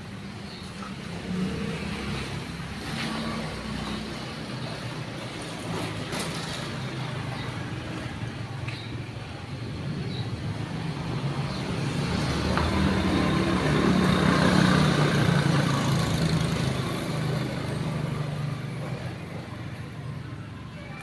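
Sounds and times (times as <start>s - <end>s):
vehicle passing by: 0.9s - 8.1s, 10.5s - 19.2s.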